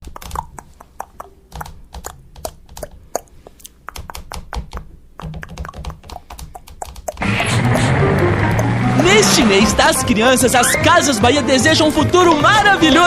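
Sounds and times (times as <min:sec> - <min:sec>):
sharp clicks and light taps: 0:00.0 - 0:08.8.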